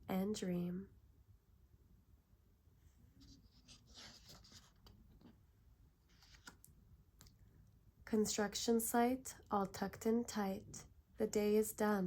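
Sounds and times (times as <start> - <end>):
faint soft rustles and clicks: 2.8 - 7.8.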